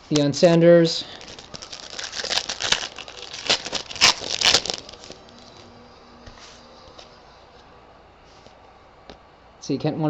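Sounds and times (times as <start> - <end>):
foil wrapper crinkling: 1.1 - 5.6
cards being handled: 1.2 - 5.7.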